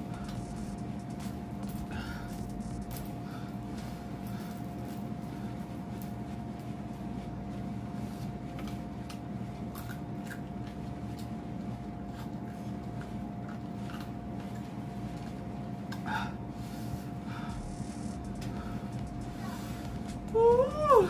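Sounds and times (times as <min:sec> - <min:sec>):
background hum with tone: 0:00.0 - 0:21.0.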